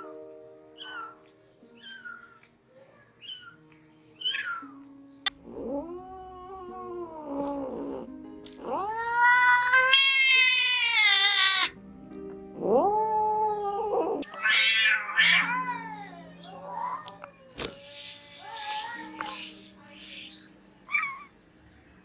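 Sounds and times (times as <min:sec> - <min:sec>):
cat meowing: 0:00.8 - 0:04.9, 0:08.7 - 0:11.8, 0:13.5 - 0:21.3.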